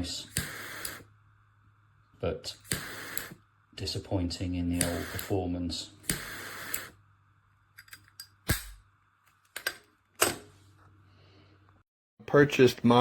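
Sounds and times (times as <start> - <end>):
faint low electrical hum: 0.0 - 13.0
short hiss: 2.7 - 3.4, 4.8 - 5.4.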